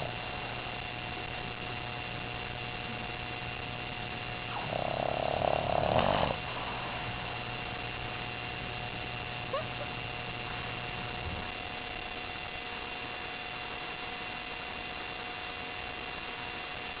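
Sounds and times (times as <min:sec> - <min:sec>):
puppy snoring: 0:00.0 - 0:00.9, 0:04.5 - 0:07.9
electrical hum: 0:00.0 - 0:17.0.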